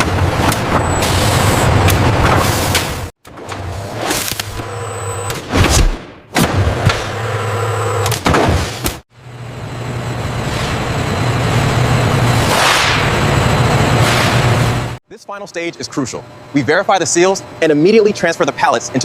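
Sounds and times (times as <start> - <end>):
low machinery hum: 9.1 - 19.0.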